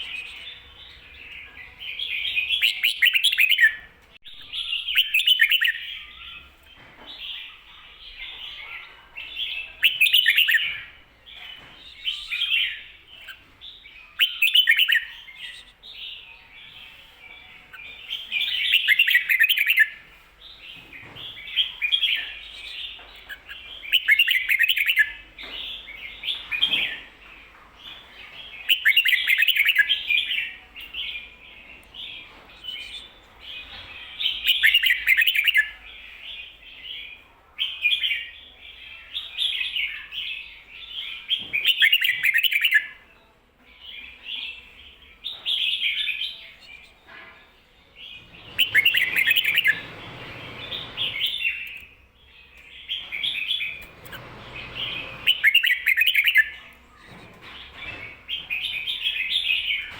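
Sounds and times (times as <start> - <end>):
bulbul chattering song: 0.0 - 6.5, 9.2 - 17.1, 47.9 - 59.9
soft bird calls: 0.0 - 43.1, 43.8 - 59.9.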